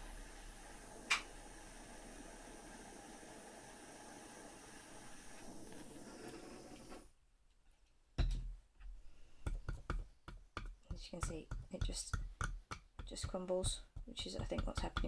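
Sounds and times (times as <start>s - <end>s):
torch flame hissing: 0.0s - 7.1s.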